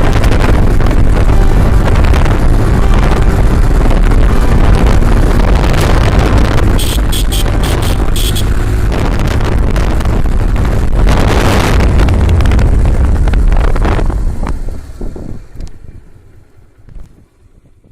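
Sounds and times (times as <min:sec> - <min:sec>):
motorcycle engine running: 0:00.0 - 0:17.9
wind buffeting microphone: 0:00.0 - 0:17.9.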